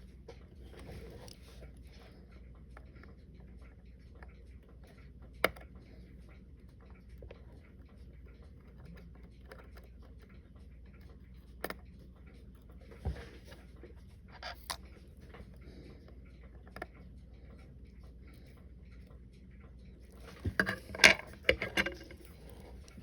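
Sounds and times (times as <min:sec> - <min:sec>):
faint scratching and handling: 0:00.0 - 0:02.8, 0:12.6 - 0:16.9, 0:20.1 - 0:23.0
tools clicking on workbench: 0:20.2 - 0:23.0.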